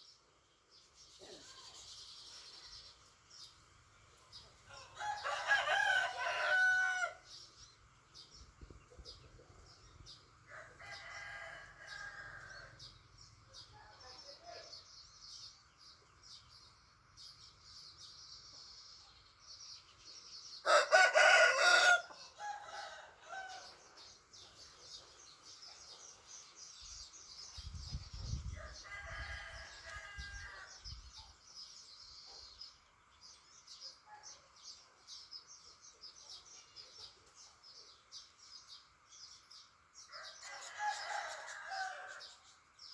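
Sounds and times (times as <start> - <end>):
rooster crowing: 4.7 - 7.3, 10.5 - 12.7, 20.6 - 23.7, 28.6 - 30.8, 40.2 - 42.3.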